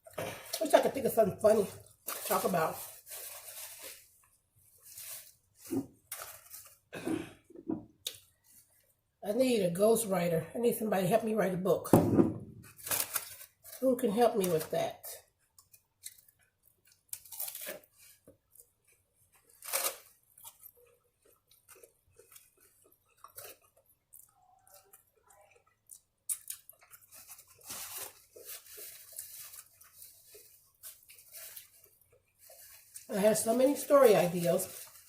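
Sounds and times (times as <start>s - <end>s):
taco crunching: 12.6s - 13.8s, 15.3s - 33.1s.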